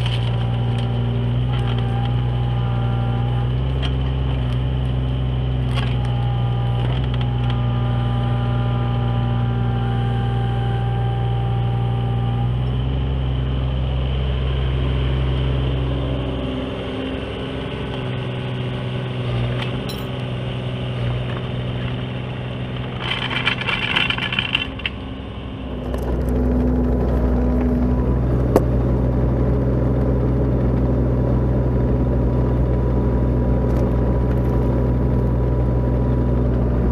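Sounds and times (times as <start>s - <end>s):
excavator diesel engine running: 0.0s - 36.9s
rattling scraping noise: 22.8s - 25.0s
high whine: 24.6s - 36.9s.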